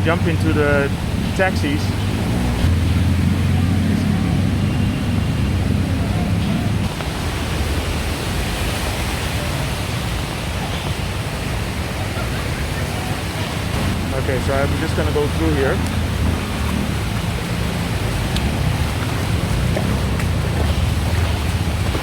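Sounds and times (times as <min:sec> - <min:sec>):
running water: 0:00.0 - 0:22.0
vehicle engine rumbling: 0:00.0 - 0:22.0
wet traffic rushing: 0:00.0 - 0:22.0.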